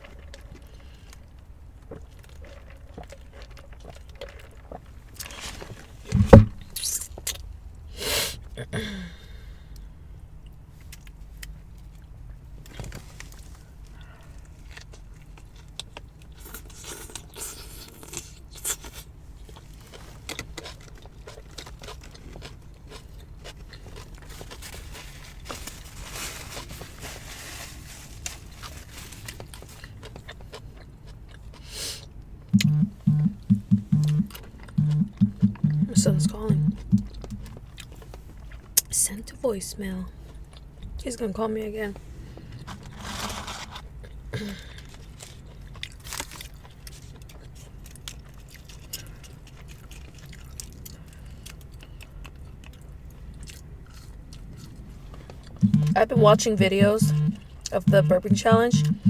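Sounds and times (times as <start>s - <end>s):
chewing and crunching food: 0.0s - 7.5s, 9.7s - 33.2s, 36.2s - 39.0s, 40.1s - 41.3s, 42.0s - 58.0s
loud low thump: 6.2s - 6.6s
wrappers rustling: 24.2s - 29.9s.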